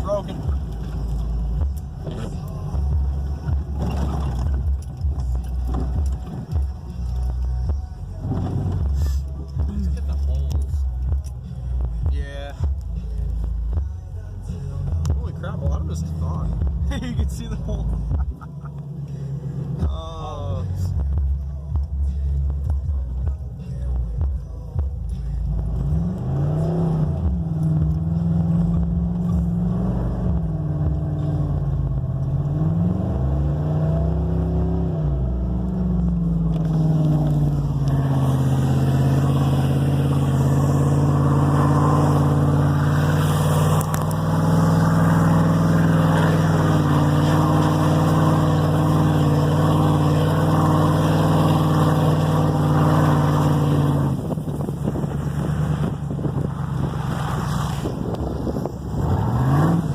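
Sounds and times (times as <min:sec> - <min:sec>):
truck engine revving: 0:00.0 - 0:12.0, 0:23.6 - 0:59.9.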